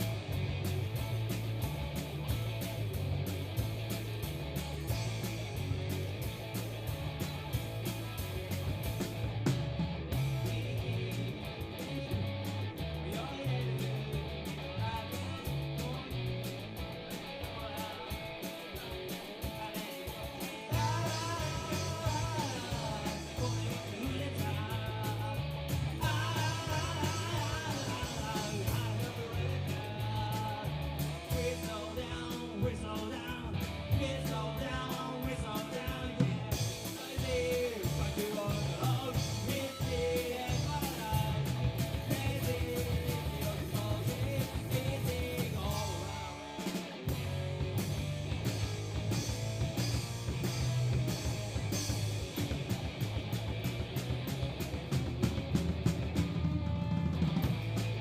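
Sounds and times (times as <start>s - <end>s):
bass guitar: 0.0s - 58.0s
drums: 0.0s - 58.0s
electric guitar: 0.0s - 58.0s
person singing: 13.0s - 16.6s, 17.2s - 46.9s.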